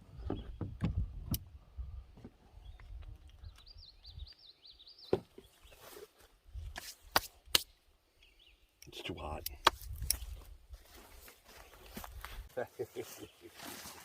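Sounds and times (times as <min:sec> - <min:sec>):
wind rumble on microphone: 0:00.0 - 0:04.3.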